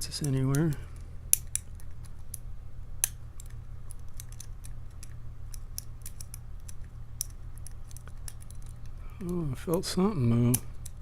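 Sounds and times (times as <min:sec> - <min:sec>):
lock pick clicking in padlock: 0:03.0 - 0:11.0.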